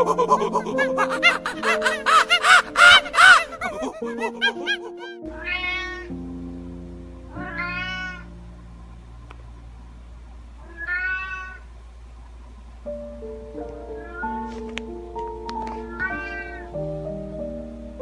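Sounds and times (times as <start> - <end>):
background music: 0.0 - 9.8, 12.9 - 18.0
cat meowing: 5.4 - 6.1, 7.4 - 8.3, 10.6 - 11.6, 14.0 - 14.5, 15.9 - 16.6.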